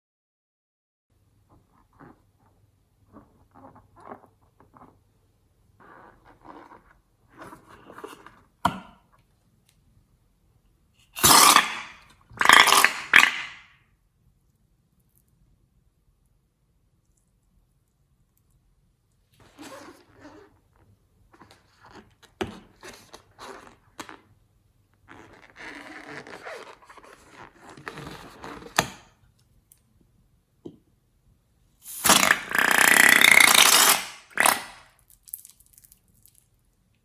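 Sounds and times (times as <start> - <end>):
slime squelching: 11.2 - 13.6, 31.9 - 35.5.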